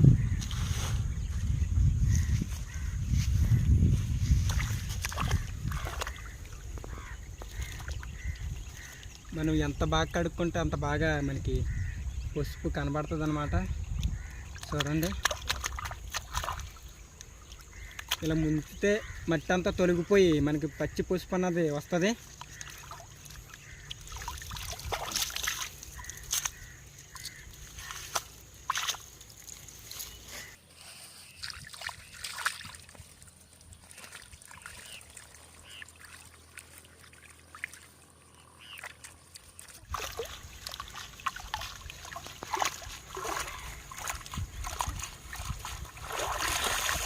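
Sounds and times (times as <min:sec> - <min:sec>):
water splashing and trickling: 0:00.0 - 0:47.0
roots swished in water: 0:24.0 - 0:30.6, 0:38.9 - 0:47.0.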